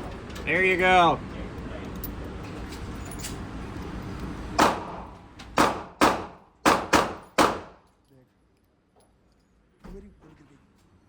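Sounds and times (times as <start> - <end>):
gunshots with echo: 4.6 - 7.8.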